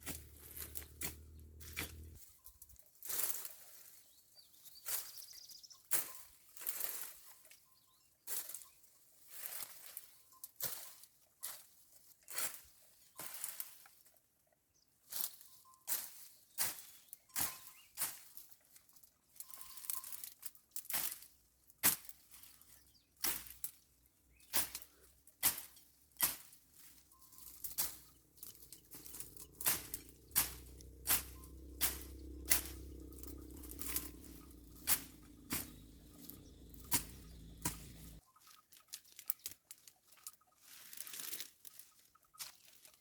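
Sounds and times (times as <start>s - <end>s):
hand tool cutting weeds: 0.0s - 2.2s, 23.2s - 38.2s.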